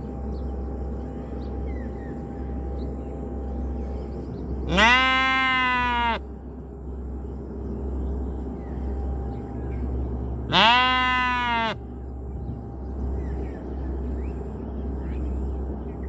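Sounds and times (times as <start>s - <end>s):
low background rumble: 0.0s - 16.0s
sheep bleating: 4.7s - 6.2s, 10.5s - 11.8s.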